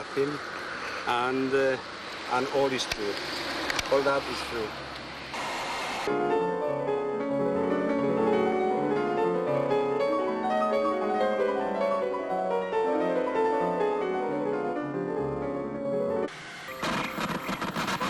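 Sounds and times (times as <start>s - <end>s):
piano music: 6.1s - 18.0s.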